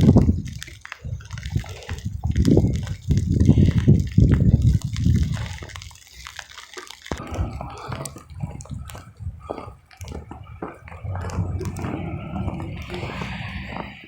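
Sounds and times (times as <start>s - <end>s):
water dripping: 0.0s - 14.0s
low rumble: 7.1s - 14.0s.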